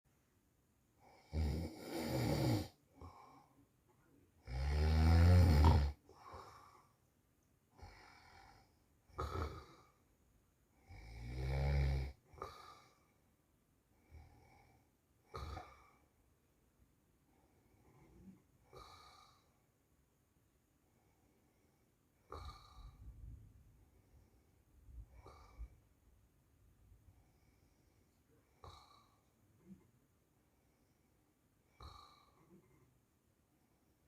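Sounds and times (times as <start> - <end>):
man snoring: 1.0 - 3.2, 4.4 - 6.6, 7.8 - 9.9, 10.8 - 12.9
soft breaths: 2.5 - 4.4, 5.6 - 11.1, 12.1 - 16.4, 17.1 - 19.8, 20.7 - 34.0.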